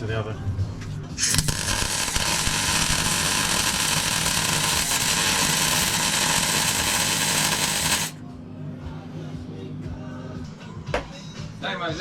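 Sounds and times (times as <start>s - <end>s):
welding arc hissing: 1.2s - 8.2s.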